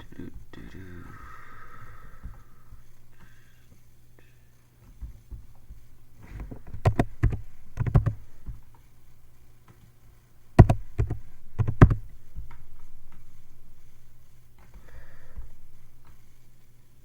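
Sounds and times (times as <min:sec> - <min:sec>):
low steady hum: 0:00.0 - 0:17.0
computer mouse clicks: 0:06.6 - 0:08.3, 0:10.6 - 0:12.1.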